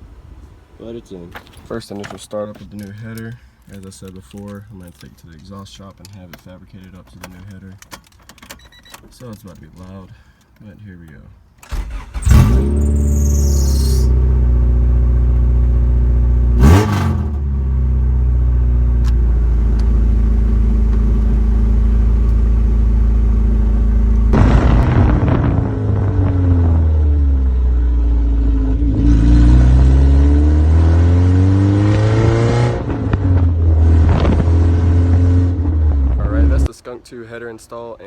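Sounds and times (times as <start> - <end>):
car engine idling and revving: 11.7 - 24.6, 25.2 - 36.7.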